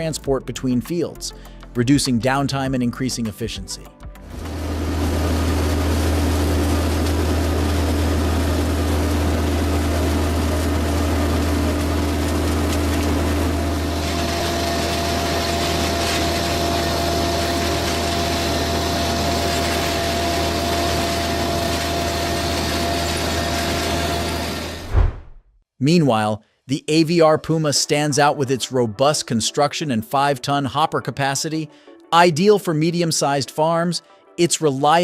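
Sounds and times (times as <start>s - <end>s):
harvester engine droning: 4.3s - 25.0s
steady hum: 4.3s - 25.4s
harsh high-pitched noise: 4.4s - 25.4s.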